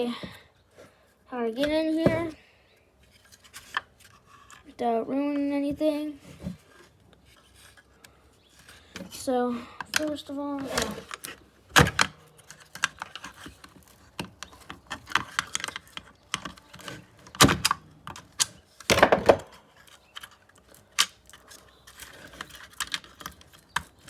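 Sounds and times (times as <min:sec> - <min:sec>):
hand tools and metal parts clicking: 0:06.8 - 0:24.0.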